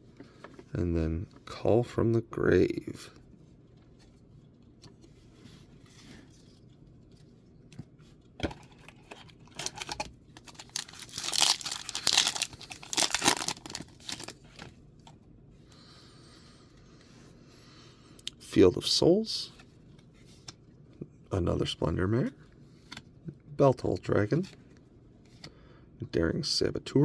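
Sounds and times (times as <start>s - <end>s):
wrapper ripping and rustling: 9.4s - 14.7s
wrapper snapping: 9.5s - 14.4s.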